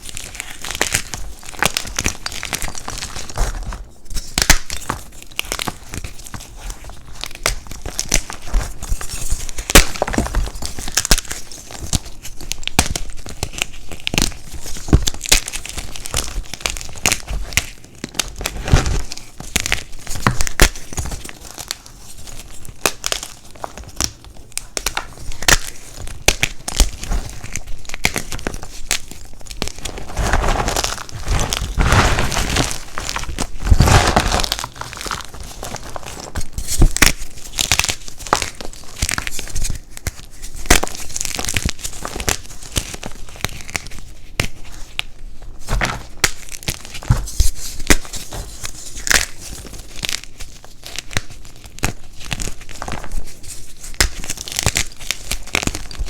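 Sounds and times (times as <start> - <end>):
chalk blocks crunching by hand: 29.6 - 39.3.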